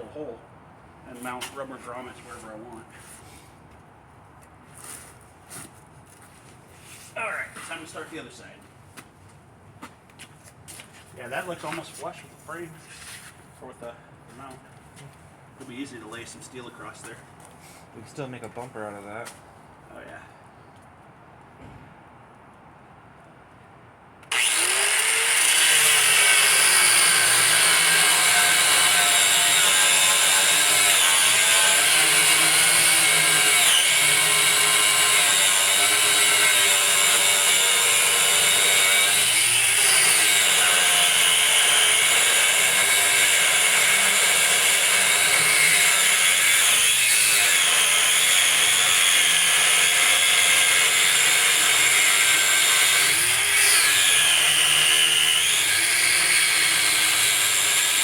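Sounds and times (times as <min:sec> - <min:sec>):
angle grinder cutting steel: 0:24.3 - 0:58.0.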